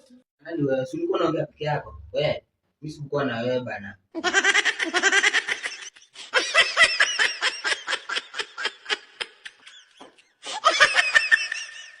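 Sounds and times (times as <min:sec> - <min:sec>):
person laughing: 0:04.2 - 0:12.0.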